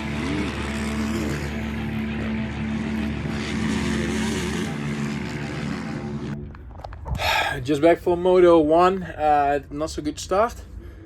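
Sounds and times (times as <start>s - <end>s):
dirt bike engines revving: 0.0s - 6.7s.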